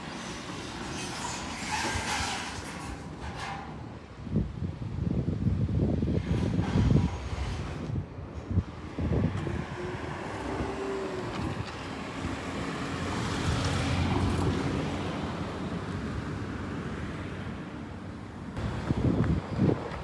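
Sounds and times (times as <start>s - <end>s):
vehicle passing by: 9.3s - 17.7s.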